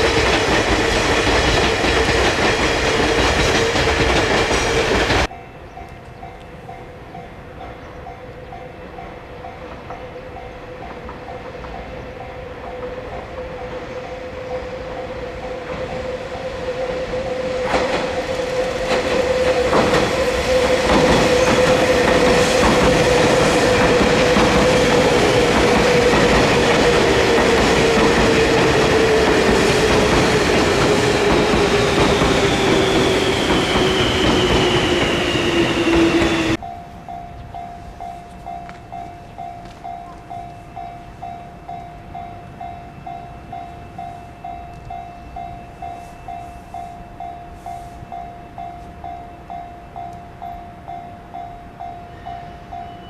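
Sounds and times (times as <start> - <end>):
wheels clicking over rail joints: 0.0 - 6.5, 17.4 - 36.6
electric train passing: 0.0 - 53.0
level crossing warning bell: 5.2 - 32.6, 36.2 - 53.0.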